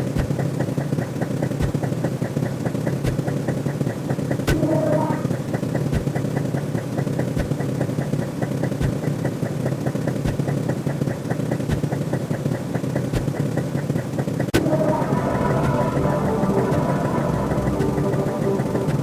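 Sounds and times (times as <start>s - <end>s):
low rumbling drone: 14.5s - 19.0s.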